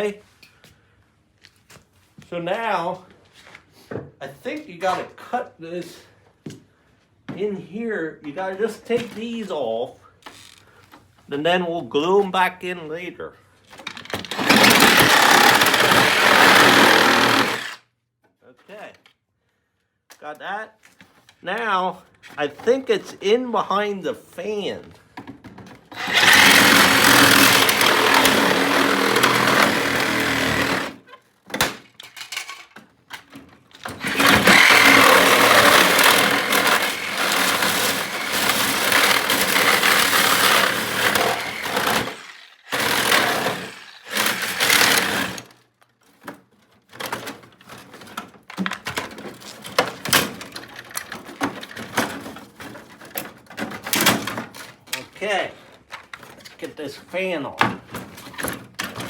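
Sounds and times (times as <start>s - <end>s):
knocks and clicks of parts: 13.8s - 17.8s
power tool running: 14.3s - 17.8s, 26.0s - 31.0s, 33.9s - 45.5s.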